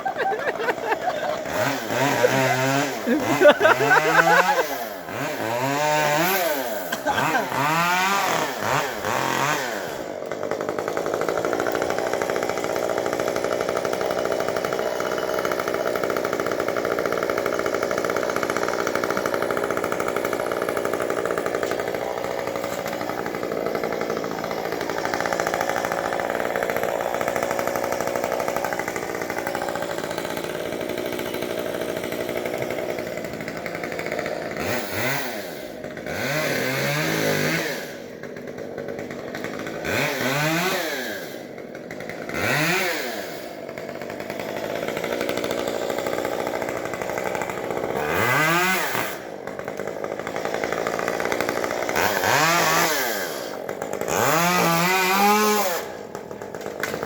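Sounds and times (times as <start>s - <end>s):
chainsaw revving: 0.0s - 57.0s.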